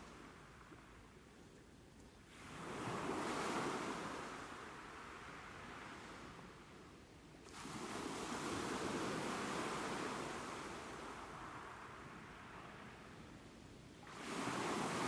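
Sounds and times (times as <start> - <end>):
ocean waves washing onto shore: 14.0 - 15.0.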